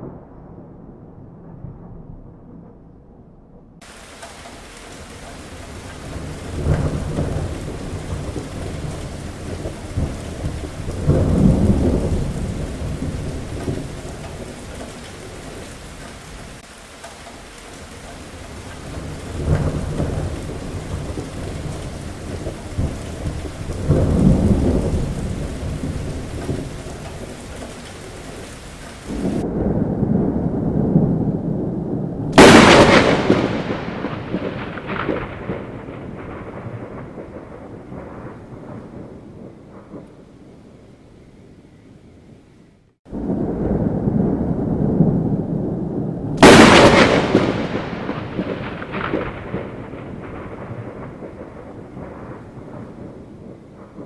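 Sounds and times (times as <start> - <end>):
sharp thunderclap: 0.0 - 40.2, 43.1 - 54.0
thunder rumbling: 0.0 - 54.0
heavy rain falling: 3.8 - 40.5, 43.1 - 54.0.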